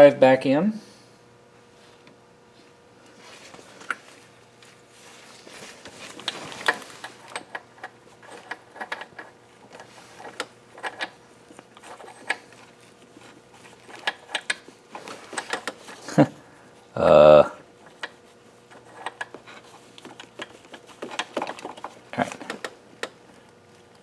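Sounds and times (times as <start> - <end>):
metal parts clicking and scraping: 6.0 - 11.2, 11.8 - 12.7.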